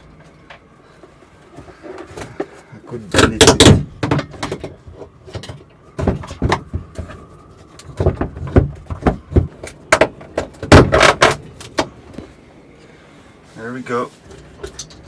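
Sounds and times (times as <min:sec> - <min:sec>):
knocks clunks and rattles: 0:01.6 - 0:12.3.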